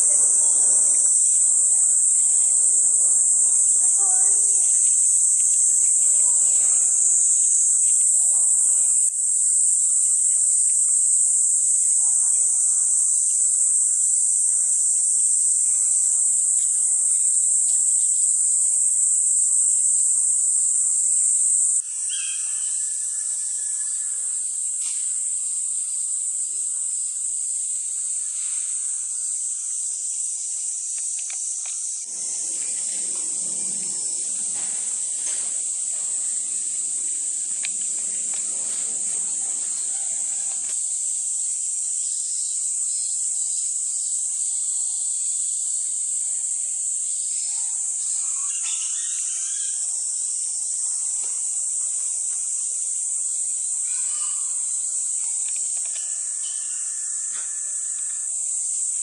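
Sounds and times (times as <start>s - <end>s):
cicadas droning: 0.0s - 59.0s
faint bird chirps: 21.8s - 26.2s, 47.4s - 49.9s.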